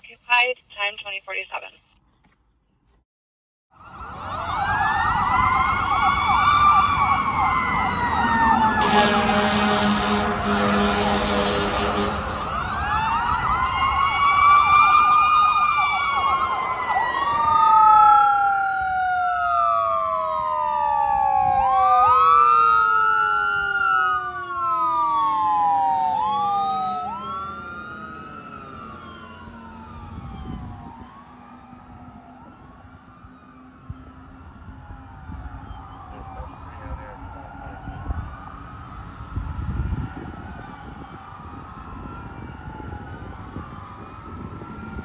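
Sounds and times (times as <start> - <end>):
fire engine siren rising and falling: 3.7 - 45.0
warbling siren: 3.7 - 45.0
air horn blast: 8.6 - 12.8.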